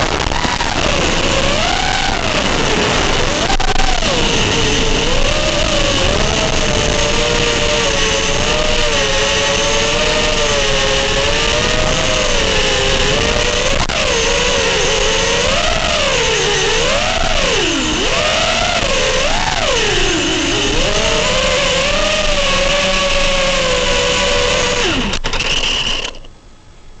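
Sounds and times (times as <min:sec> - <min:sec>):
drone motors whining: 0:00.0 - 0:26.3.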